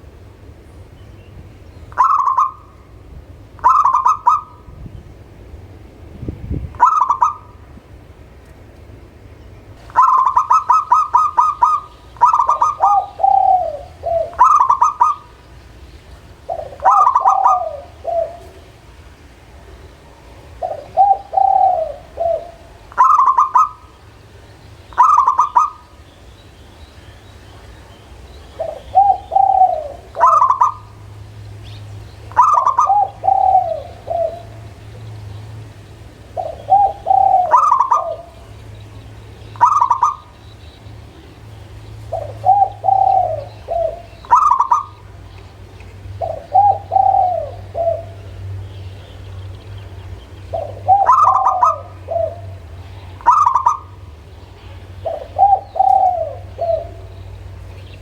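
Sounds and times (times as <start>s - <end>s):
dove cooing: 1.9s - 4.8s, 6.7s - 7.6s, 9.8s - 15.5s, 16.2s - 18.8s, 19.6s - 24.2s, 24.9s - 26.0s, 27.6s - 31.1s, 32.3s - 35.1s, 36.2s - 38.7s, 39.5s - 40.4s, 42.0s - 45.2s, 46.0s - 48.4s, 50.3s - 54.2s, 54.8s - 58.0s.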